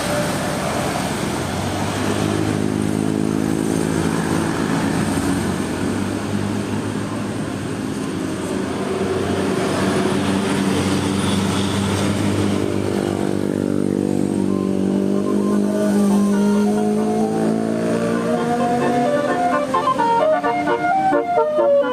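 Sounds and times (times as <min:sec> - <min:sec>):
bus passing with road noise: 0:00.0 - 0:21.9
steady pitched engine drone: 0:14.4 - 0:21.9.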